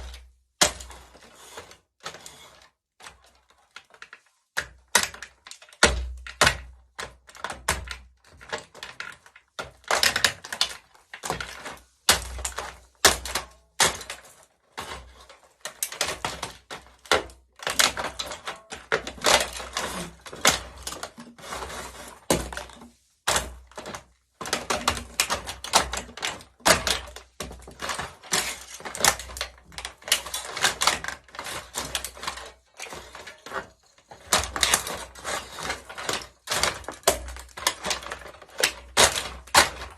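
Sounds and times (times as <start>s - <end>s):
plastic toy cracking and snapping: 23.3s - 39.9s.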